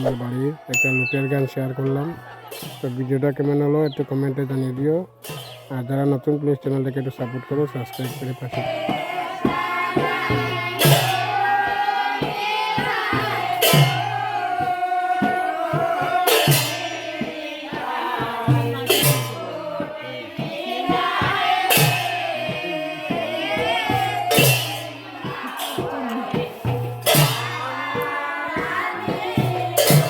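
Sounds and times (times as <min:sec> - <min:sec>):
group of voices singing: 0:00.0 - 0:30.0
rhythmic claps: 0:08.0 - 0:30.0.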